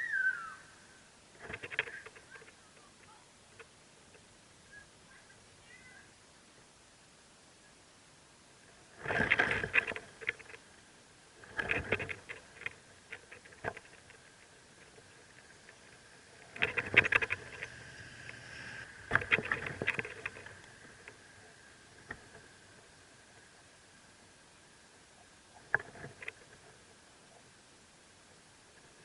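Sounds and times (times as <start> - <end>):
faint thin steady tone: 0.0 - 11.6
rustling and scratching in nest: 1.3 - 4.2, 8.7 - 10.7, 11.4 - 23.6
scattered ticks: 1.4 - 4.3, 8.6 - 10.8, 11.4 - 23.6, 25.1 - 27.5.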